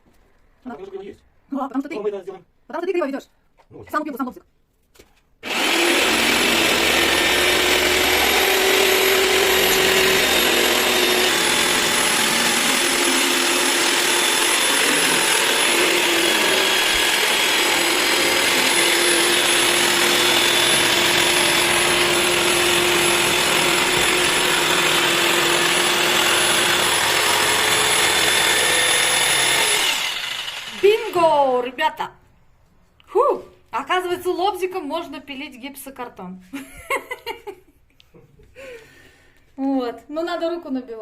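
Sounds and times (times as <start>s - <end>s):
jigsaw cutting drywall: 5.4s - 31.6s.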